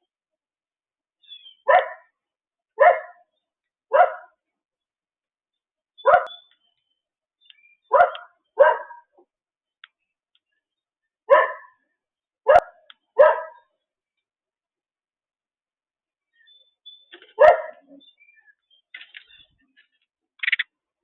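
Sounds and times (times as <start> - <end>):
dog barking: 1.6 - 2.1, 2.8 - 3.2, 3.9 - 4.4, 6.0 - 6.4, 7.9 - 9.1, 11.3 - 11.8, 12.5 - 13.7, 17.4 - 18.0.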